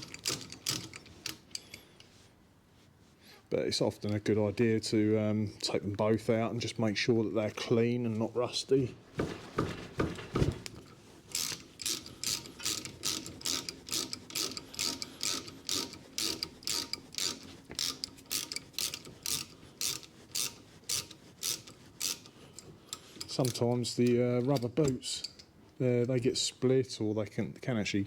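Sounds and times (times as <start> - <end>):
socket ratchet clicking: 0.0 - 1.8, 11.3 - 22.3.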